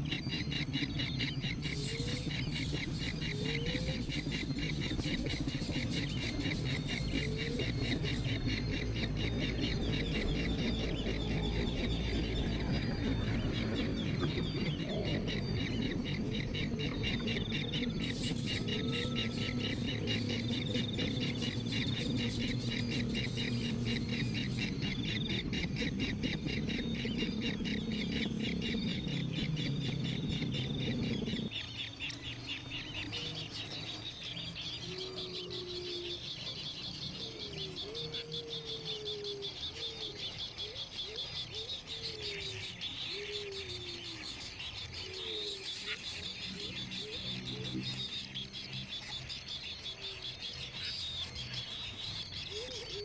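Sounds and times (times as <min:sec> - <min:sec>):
baby birds chirping: 0:00.0 - 0:53.0
loud low noise: 0:00.3 - 0:36.6.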